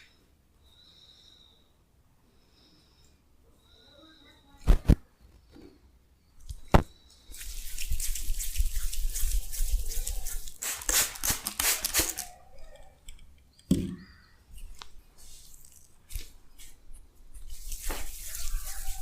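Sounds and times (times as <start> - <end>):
hands rubbing shaving foam: 7.2 - 12.4, 14.6 - 19.0.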